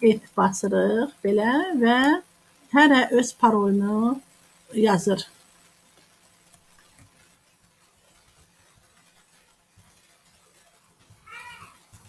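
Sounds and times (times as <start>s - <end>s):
faint ticks: 5.6s - 12.0s.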